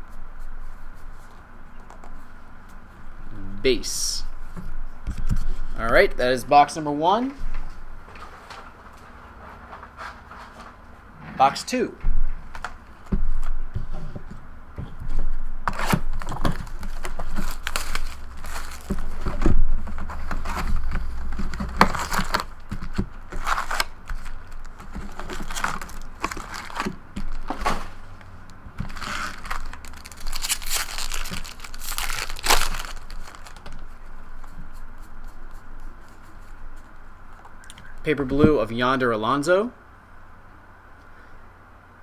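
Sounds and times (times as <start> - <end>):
wrappers crinkling: 15.7 - 28.0, 28.8 - 38.0.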